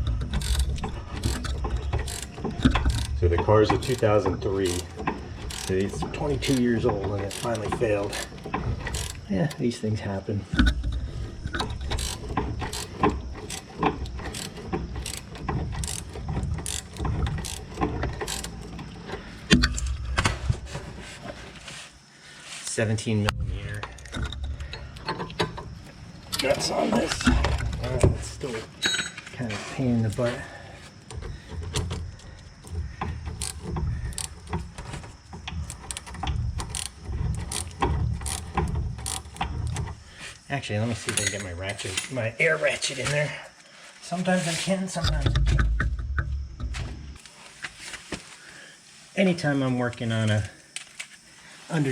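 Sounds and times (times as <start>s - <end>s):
ratchet wrench clicking: 0.0s - 9.3s, 11.5s - 20.0s, 33.3s - 34.5s, 35.6s - 39.8s.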